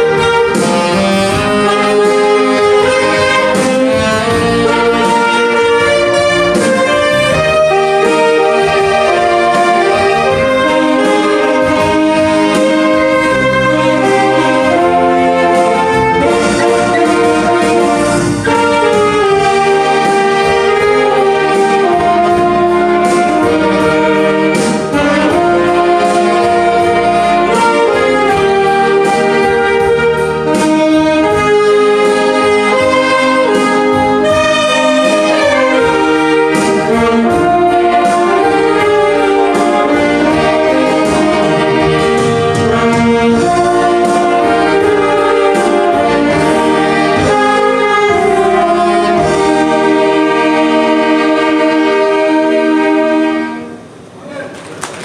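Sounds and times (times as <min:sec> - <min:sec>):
saxophone ensemble playing a hymn: 0:00.0 - 0:55.0.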